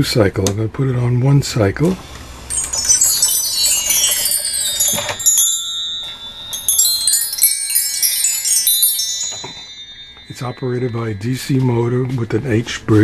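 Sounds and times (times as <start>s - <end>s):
chimes ringing cascade: 2.5s - 12.2s.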